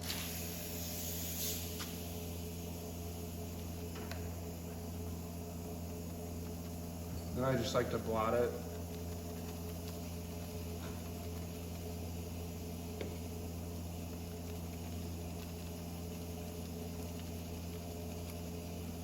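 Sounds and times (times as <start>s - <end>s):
faint hiss: 0.0s - 2.5s
low mechanical hum: 0.0s - 19.0s.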